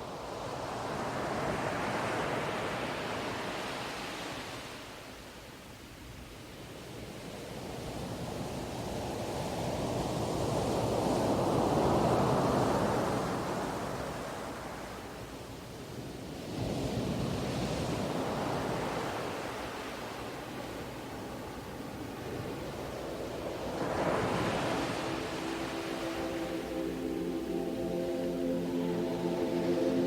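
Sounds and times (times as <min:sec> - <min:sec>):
ocean waves washing onto shore: 0:06.5 - 0:30.0.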